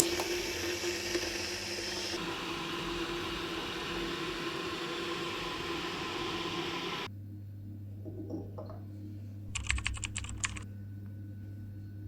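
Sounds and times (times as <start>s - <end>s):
appliance motor whirring: 0.0s - 7.1s.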